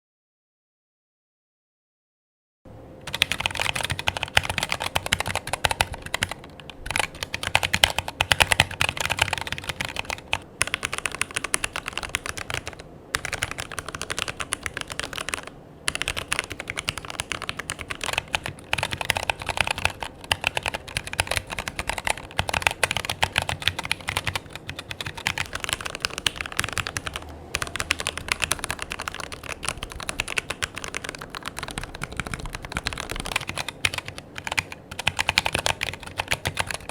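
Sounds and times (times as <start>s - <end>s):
mechanical keyboard typing: 3.0s - 36.9s.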